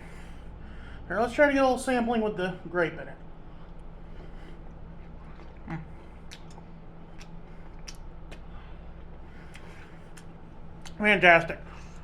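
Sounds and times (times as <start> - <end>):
low electrical hum: 0.0 - 12.0
person chewing food: 3.7 - 11.0
closed-mouth mm: 4.1 - 10.3.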